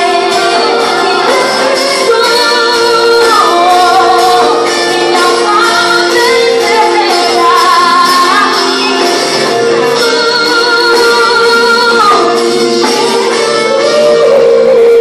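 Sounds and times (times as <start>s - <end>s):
band playing sustained chords: 0.0s - 15.0s
woman singing: 0.0s - 15.0s.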